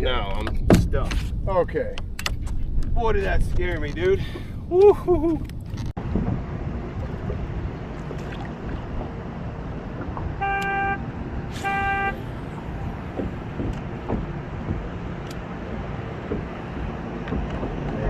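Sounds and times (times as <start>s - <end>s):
steady low rumble: 0.0s - 10.4s, 11.0s - 18.0s
horn toots: 10.4s - 13.4s.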